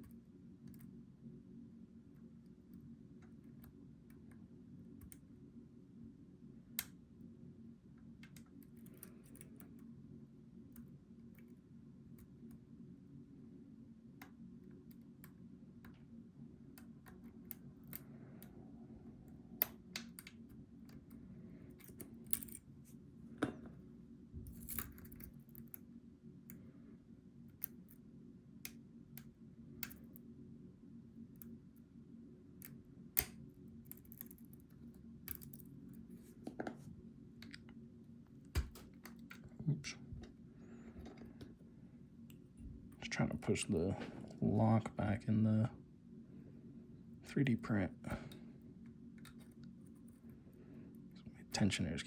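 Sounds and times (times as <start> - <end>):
steady low hum: 0.0 - 52.0
lock picks clicking and scraping: 8.3 - 9.8, 19.3 - 22.7, 24.4 - 25.8, 32.6 - 36.0.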